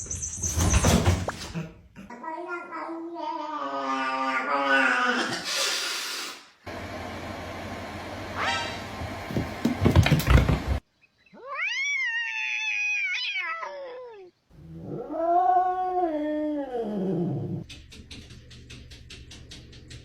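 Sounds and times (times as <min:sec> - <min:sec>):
cat yowling: 0:11.4 - 0:14.3.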